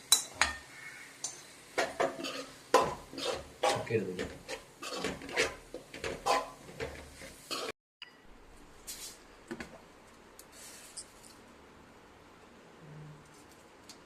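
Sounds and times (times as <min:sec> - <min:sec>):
spoon scraping cooking pot: 0:01.8 - 0:07.7.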